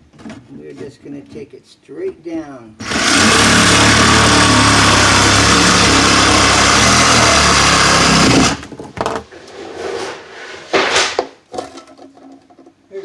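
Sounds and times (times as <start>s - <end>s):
reciprocating saw cutting drywall: 2.8s - 8.7s.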